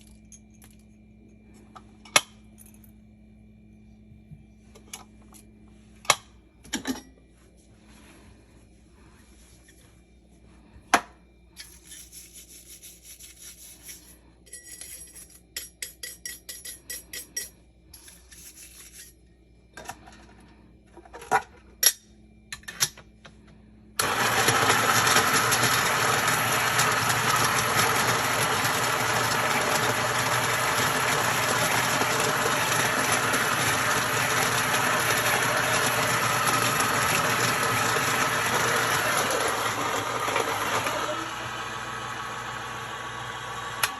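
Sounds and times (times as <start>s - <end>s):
coffee grinder grinding beans: 11.6s - 14.2s, 24.0s - 43.9s.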